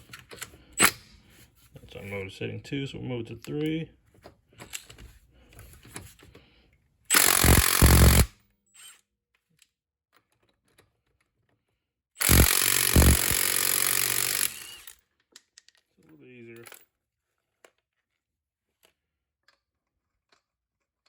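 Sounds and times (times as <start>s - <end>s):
impact wrench hammering: 7.1s - 8.3s, 12.2s - 14.9s.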